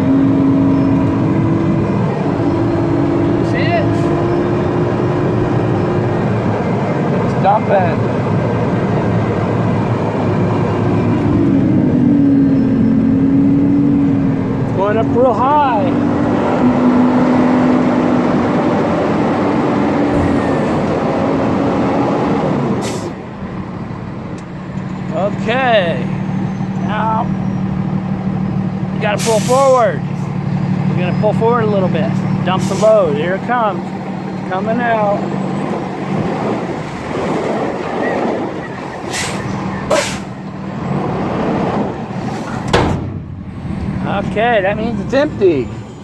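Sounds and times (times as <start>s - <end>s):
truck engine running under load: 0.0s - 46.0s
short hisses: 29.2s - 29.8s, 39.1s - 40.4s.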